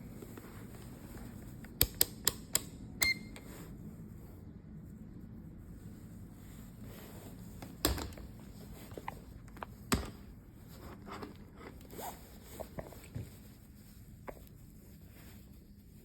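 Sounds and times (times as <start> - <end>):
handling clicks and taps: 1.6 - 3.4.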